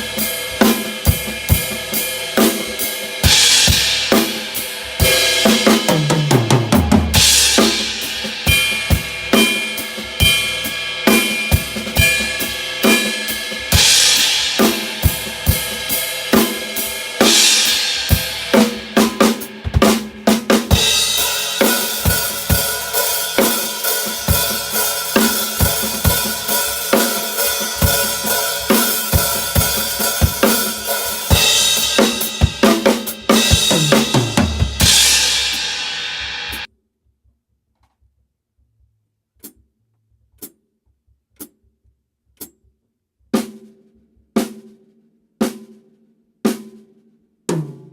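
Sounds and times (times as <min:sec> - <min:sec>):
snare drum: 0:02.4 - 0:36.7
crash cymbal: 0:02.9 - 0:06.0.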